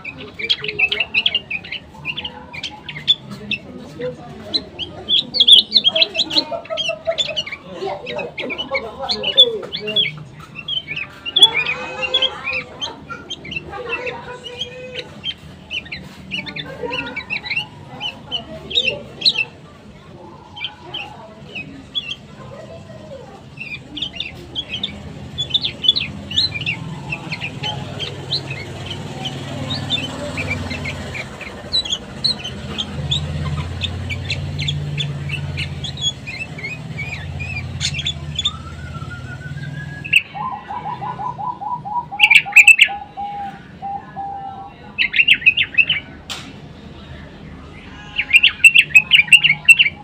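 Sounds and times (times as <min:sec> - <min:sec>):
bulbuls chirping: 0:00.0 - 0:50.0
bird rising whistle: 0:37.0 - 0:40.4.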